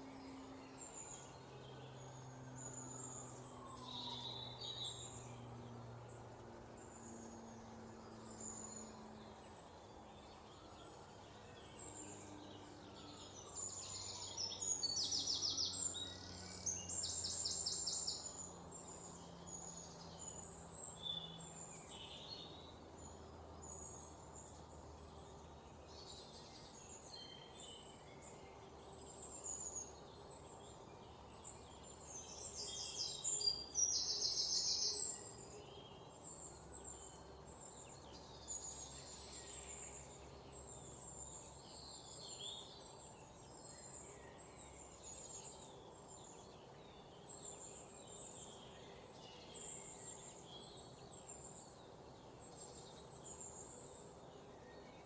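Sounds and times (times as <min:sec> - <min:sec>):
faint background hiss: 0:00.0 - 0:55.0
songbirds chirping and trilling: 0:00.0 - 0:55.0.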